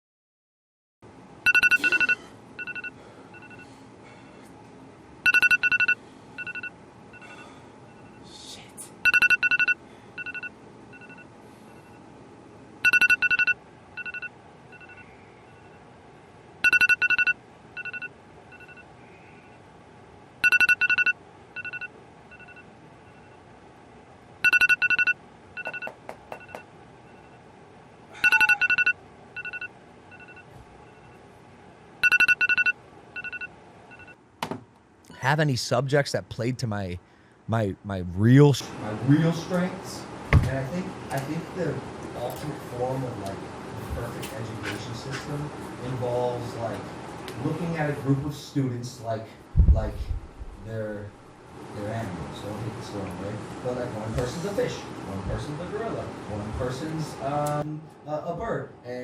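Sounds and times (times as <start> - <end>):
short faint beeps: 28.2 - 31.2.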